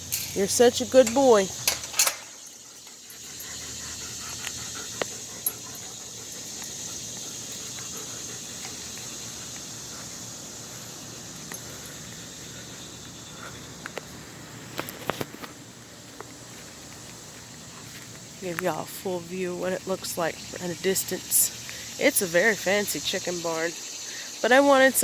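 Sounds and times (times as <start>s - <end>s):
dog panting: 2.4s - 10.9s.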